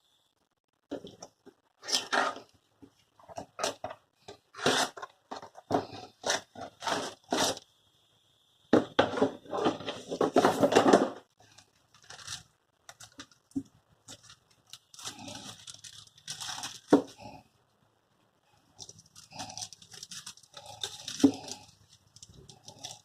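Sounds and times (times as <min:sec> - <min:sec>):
packaging rustling and tearing: 0:04.5 - 0:07.6, 0:11.6 - 0:17.3, 0:18.8 - 0:23.0.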